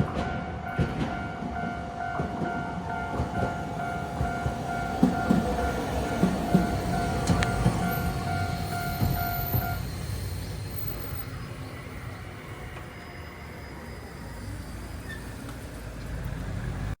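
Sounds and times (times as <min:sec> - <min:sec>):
railroad crossing bell ringing: 0:00.0 - 0:10.1
street background noise: 0:00.0 - 0:17.0
tram rumble: 0:00.0 - 0:17.0.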